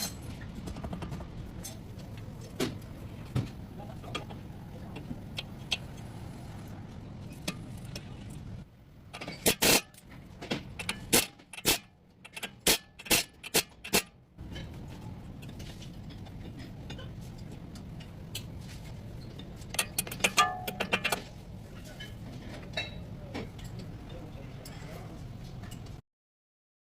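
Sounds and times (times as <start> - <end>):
sharp metallic clicks and knocks: 0.0 - 6.3, 9.1 - 21.4
steady low rumble: 0.0 - 9.2, 9.8 - 26.0.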